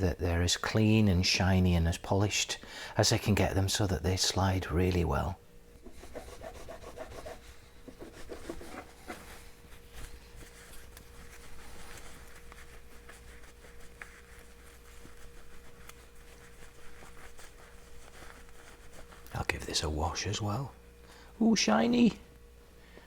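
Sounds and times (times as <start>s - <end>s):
faint steady hum: 0.0s - 23.0s
hand rubbing and scratching metal: 5.8s - 19.5s.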